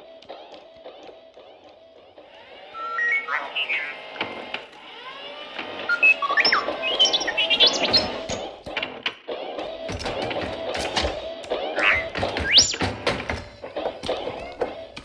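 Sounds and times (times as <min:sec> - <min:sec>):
electronic robot beeps and whistles: 0:02.4 - 0:04.5, 0:05.7 - 0:08.4, 0:11.7 - 0:13.0.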